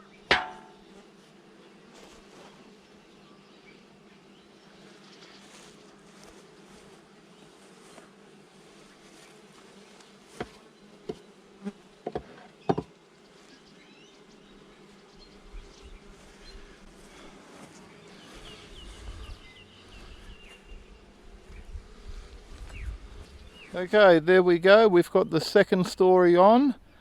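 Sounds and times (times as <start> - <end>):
honey bees buzzing: 0.0 - 27.0
sharp knocks: 0.3 - 0.8.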